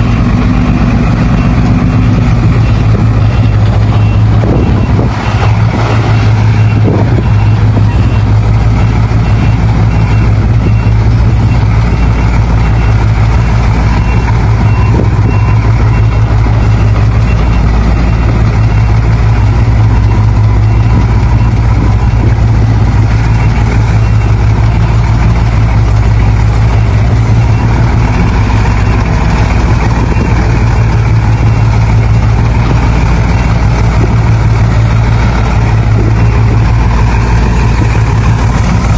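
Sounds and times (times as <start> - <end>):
heavy diesel engines humming: 0.0 - 38.9.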